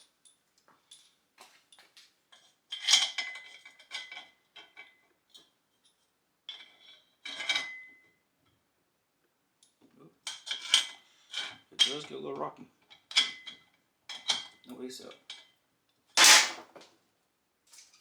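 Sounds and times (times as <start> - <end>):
metal frame pieces clanking: 16.2 - 16.6.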